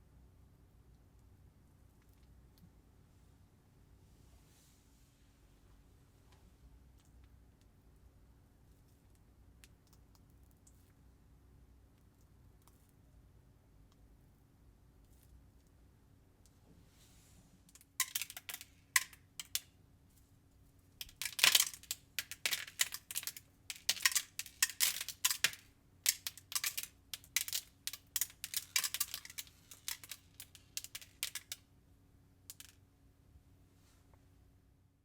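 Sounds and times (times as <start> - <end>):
faint steady hum: 0.0 - 35.0
plastic crinkling: 21.1 - 31.6.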